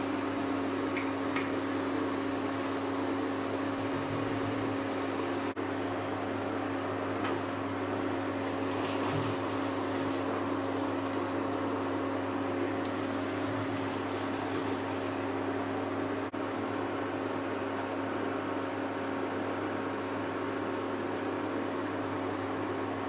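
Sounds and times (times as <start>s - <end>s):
appliance motor humming: 0.0s - 19.1s.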